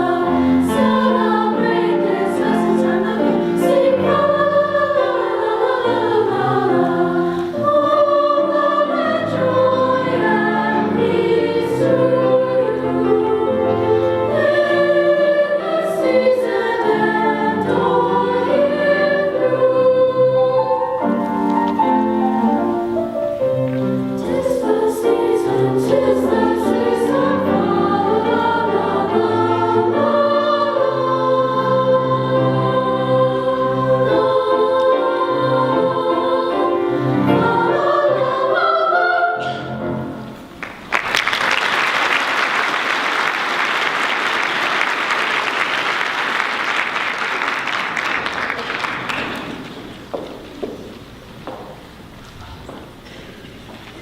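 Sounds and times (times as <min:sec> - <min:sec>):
women's chorus singing in harmony: 0:00.0 - 0:22.8, 0:23.4 - 0:40.4.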